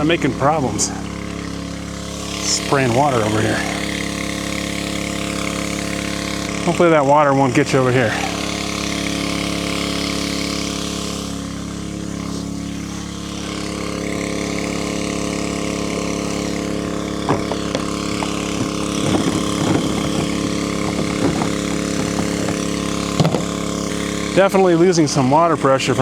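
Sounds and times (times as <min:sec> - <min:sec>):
small gasoline engine running: 0:00.0 - 0:26.0
water pumping into tank: 0:00.0 - 0:26.0
irregular clicks and knocks: 0:17.2 - 0:23.6.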